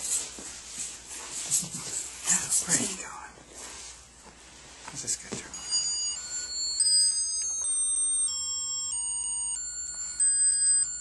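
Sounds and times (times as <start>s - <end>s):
electronic toy tune: 5.6s - 11.0s.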